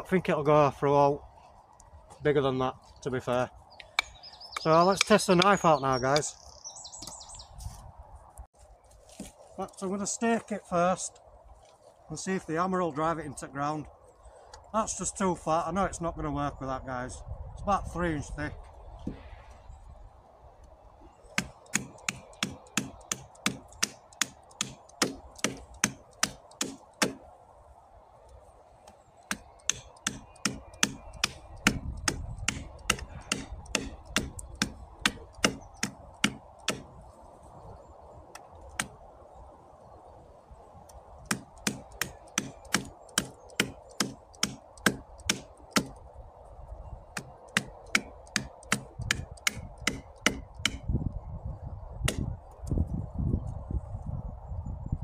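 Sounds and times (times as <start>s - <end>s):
hatchet chopping wood: 21.3s - 27.2s, 29.3s - 36.9s, 38.3s - 39.0s, 41.2s - 46.0s, 47.1s - 50.9s, 52.0s - 52.3s.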